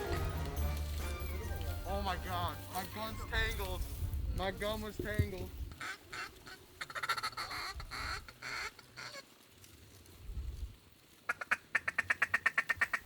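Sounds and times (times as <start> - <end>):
duck quacking: 5.7 - 9.2, 11.3 - 13.0.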